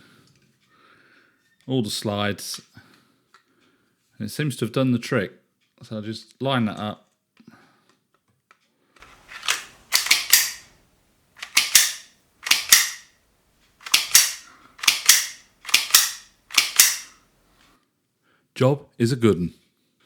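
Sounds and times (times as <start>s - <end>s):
pistol slide racking metal clacks: 9.0s - 10.8s, 11.4s - 13.1s, 13.8s - 17.2s.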